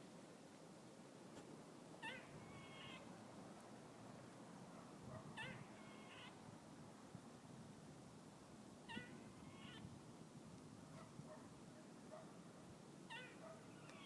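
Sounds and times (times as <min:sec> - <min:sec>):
squirrel calling faintly: 0:02.0 - 0:03.1, 0:05.2 - 0:06.4, 0:13.1 - 0:14.0.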